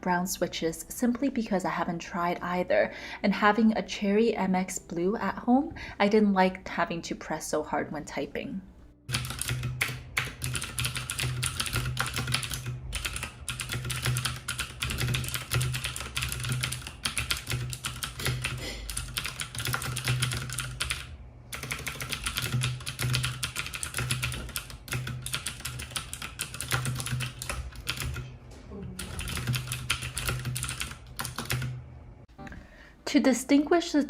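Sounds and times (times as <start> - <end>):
mechanical keyboard typing: 9.1 - 28.3, 29.0 - 31.8.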